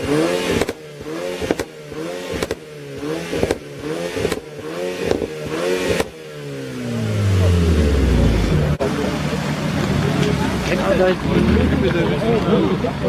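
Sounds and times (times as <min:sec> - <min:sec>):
car engine revving: 0:00.0 - 0:13.0
exhaust cracks: 0:03.4 - 0:12.6
deeper engine note: 0:06.7 - 0:09.2.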